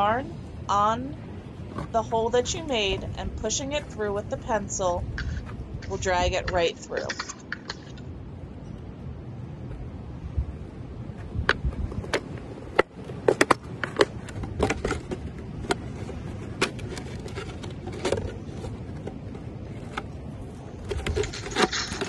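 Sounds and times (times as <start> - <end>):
plastic bottle crackling: 20.8 - 22.0.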